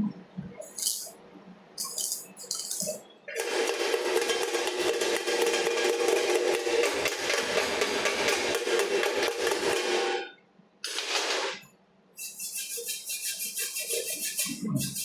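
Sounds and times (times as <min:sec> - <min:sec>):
welding arc crackling: 0:01.8 - 0:05.2.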